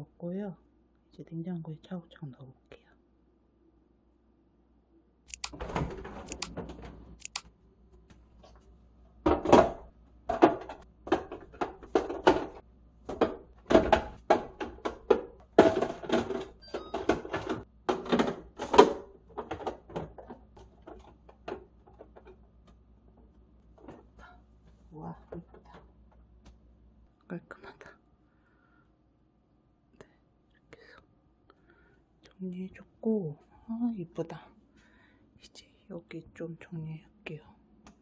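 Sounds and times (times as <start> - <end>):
plastic canisters clacking: 9.3 - 22.4.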